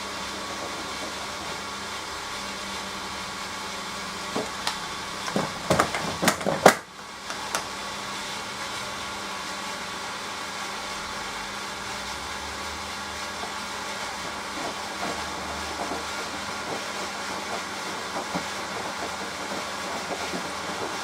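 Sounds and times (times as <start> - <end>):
washing machine humming: 0.0 - 21.0
sharp clicks and knocks: 4.4 - 7.7.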